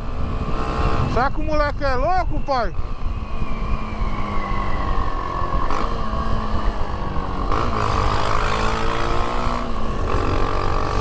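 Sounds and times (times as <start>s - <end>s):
loud vehicle engine running: 2.8s - 11.0s.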